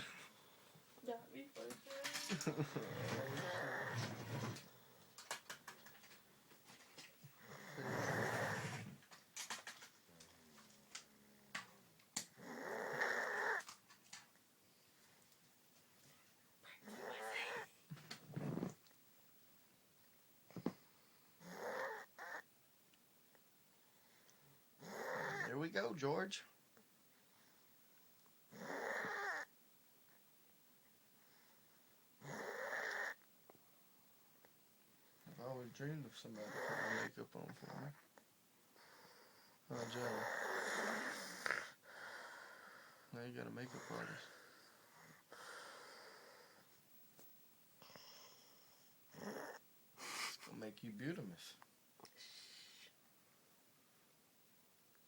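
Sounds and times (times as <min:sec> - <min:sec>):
person snoring: 0:02.6 - 0:04.6, 0:07.5 - 0:08.9, 0:39.7 - 0:41.8, 0:43.6 - 0:44.4.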